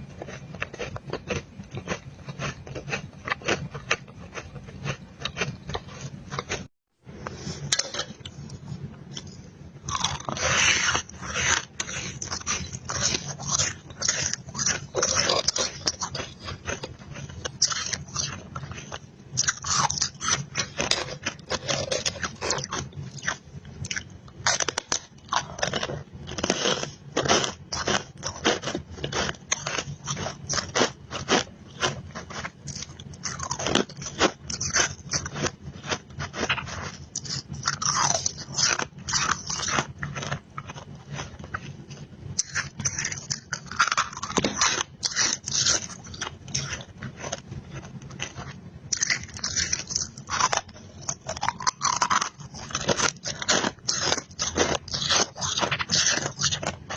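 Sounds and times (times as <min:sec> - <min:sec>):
chewing crunchy ice: 0:00.0 - 0:06.7, 0:07.4 - 0:56.9.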